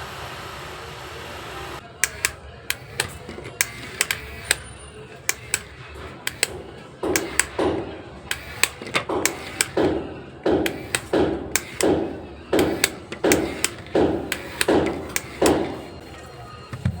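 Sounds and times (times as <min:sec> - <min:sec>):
sharp taps: 0:01.9 - 0:17.0
soft rhythmic thumps: 0:01.9 - 0:17.0.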